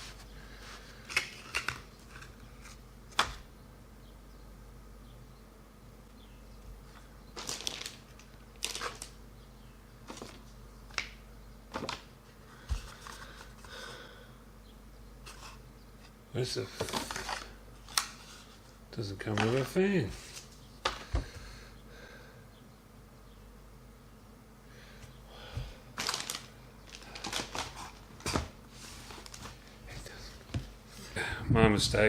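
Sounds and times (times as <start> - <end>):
packaging rustling: 7.4 - 9.2, 10.1 - 11.0, 16.8 - 18.5, 25.9 - 30.7.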